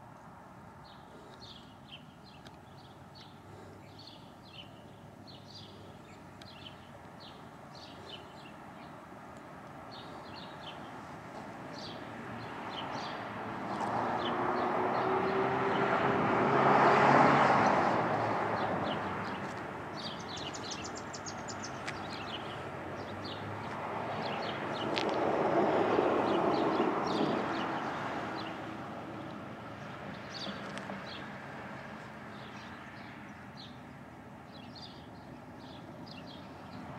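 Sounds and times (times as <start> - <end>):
vehicles passing by: 0.0 - 36.9
small birds chirping: 0.1 - 16.2, 17.5 - 25.2, 26.2 - 36.9.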